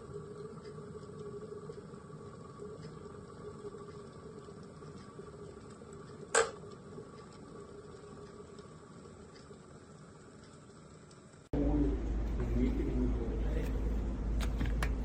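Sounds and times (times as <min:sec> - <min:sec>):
electric kettle humming and hissing: 0:00.0 - 0:15.0
kettle click: 0:06.3 - 0:06.6.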